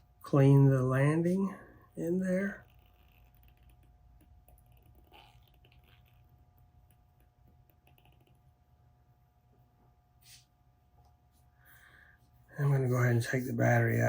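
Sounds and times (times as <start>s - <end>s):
low steady hum: 0.0s - 14.0s
small clicks and scrapes: 2.6s - 8.5s.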